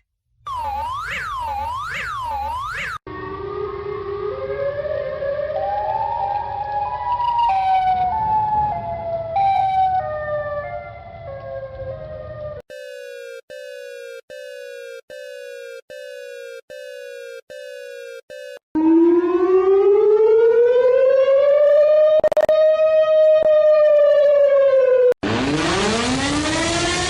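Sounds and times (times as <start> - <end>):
alert alarm beeps: 0.0 - 3.0, 12.7 - 18.6
rising siren tone: 0.5 - 12.6, 18.8 - 27.0.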